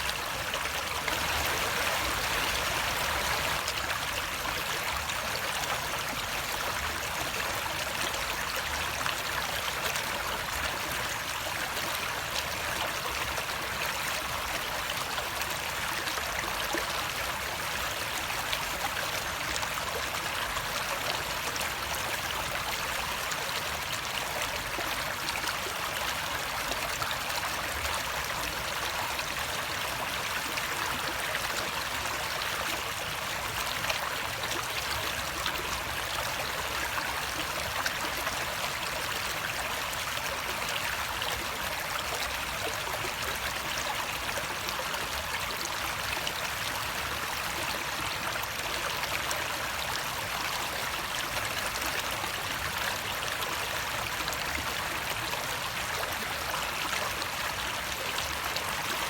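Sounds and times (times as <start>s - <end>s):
stream water rushing: 0.0s - 12.6s.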